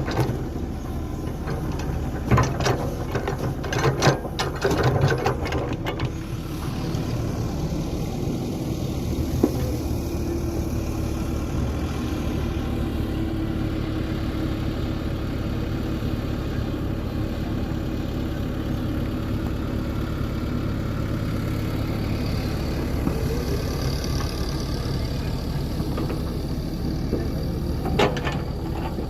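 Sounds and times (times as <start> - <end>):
excavator diesel engine running: 0.0 - 29.0.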